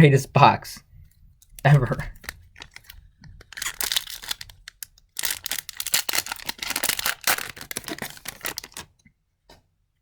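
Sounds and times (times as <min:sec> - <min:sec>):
card pack wrapper crinkling: 0:01.5 - 0:09.0.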